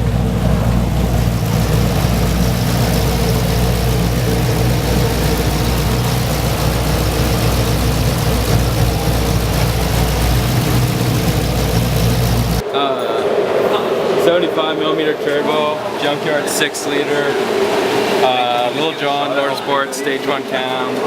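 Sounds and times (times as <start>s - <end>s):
car engine idling: 0.0s - 12.6s.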